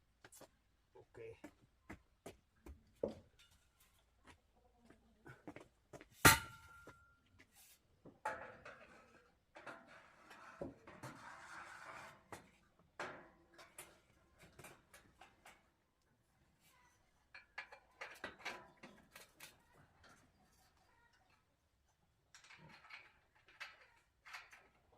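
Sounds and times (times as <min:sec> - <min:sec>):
sharp knock with metallic ring: 0:06.3 - 0:06.8.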